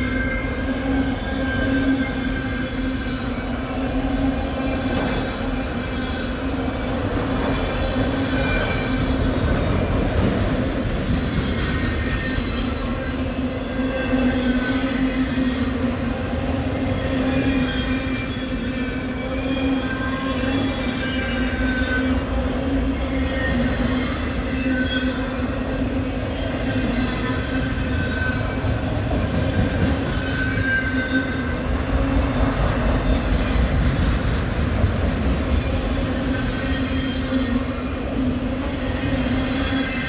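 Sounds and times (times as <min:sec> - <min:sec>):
train rumbling past: 0:00.0 - 0:40.0
train wheels squealing: 0:00.0 - 0:40.0.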